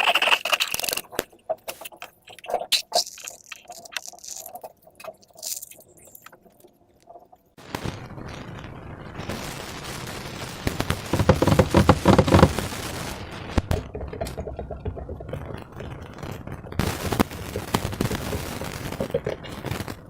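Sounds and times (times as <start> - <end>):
slime squished by hand: 0.0 - 6.3.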